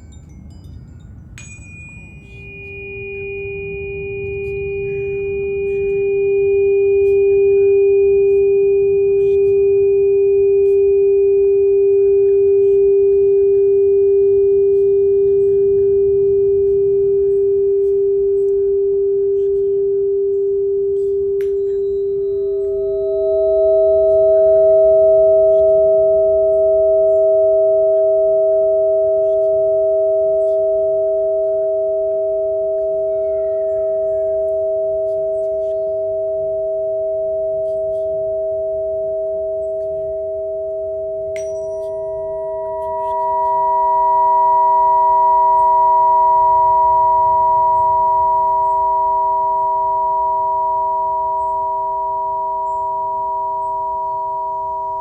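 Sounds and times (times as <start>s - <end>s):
higher ringing tone: 0.0s - 55.0s
low ringing tones: 0.0s - 55.0s.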